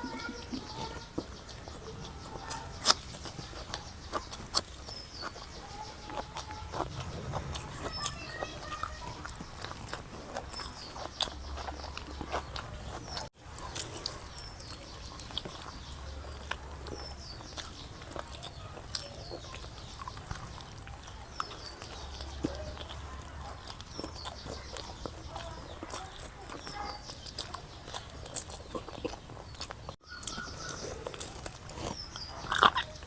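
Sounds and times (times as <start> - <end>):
chewing with wet crunches: 0.0 - 33.0
faint bird chirps: 30.0 - 33.0.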